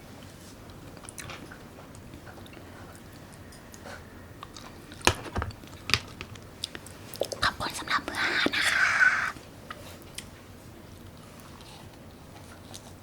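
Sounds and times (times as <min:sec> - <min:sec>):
wet mouth clicks: 0:07.2 - 0:09.4.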